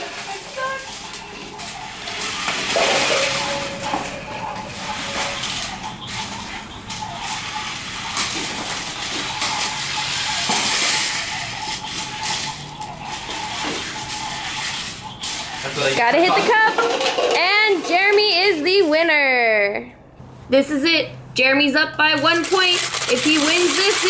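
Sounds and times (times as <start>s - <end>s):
electric toy motors whirring: 5.0s - 16.6s, 22.2s - 24.0s
plastic clattering and knocking: 16.1s - 18.4s.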